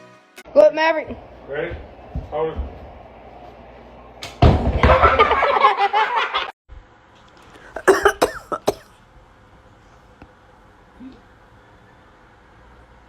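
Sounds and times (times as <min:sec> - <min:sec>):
person coughing: 0:07.7 - 0:08.9.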